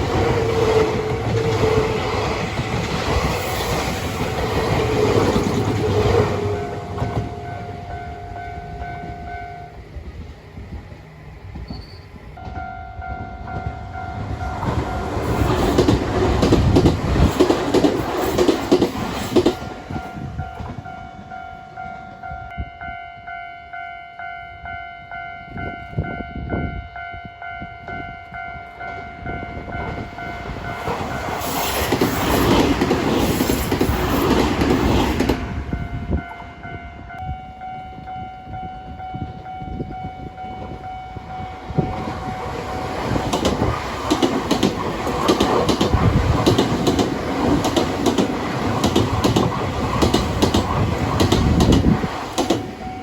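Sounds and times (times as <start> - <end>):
level crossing warning bell: 0.0 - 10.0, 12.4 - 16.5, 19.6 - 31.8, 35.6 - 49.4, 51.6 - 53.0
train wheels clattering over rails: 13.6 - 20.8, 29.9 - 35.7, 41.8 - 53.0.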